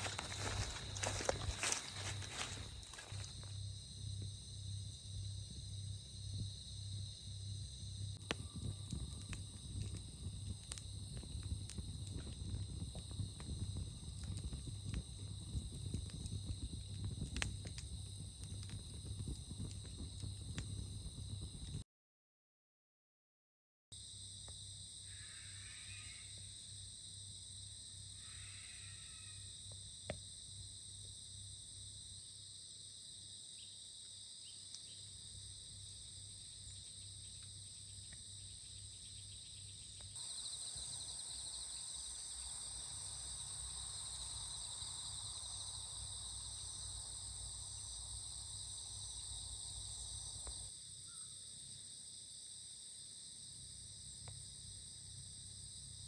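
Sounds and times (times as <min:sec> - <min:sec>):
insect chorus chirring: 0:00.0 - 0:21.8, 0:24.5 - 0:32.5, 0:33.2 - 0:56.0.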